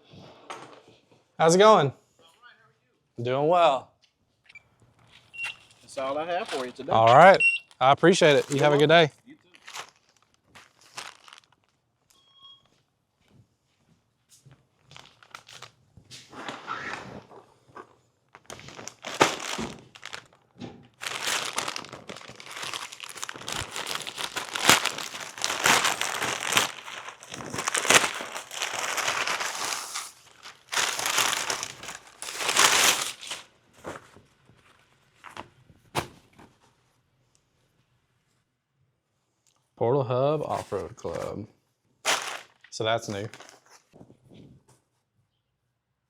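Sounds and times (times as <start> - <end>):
packaging torn and crinkled: 6.4 - 6.8, 7.7 - 11.8, 14.9 - 15.8, 18.4 - 20.4, 21.0 - 34.0, 42.1 - 43.7.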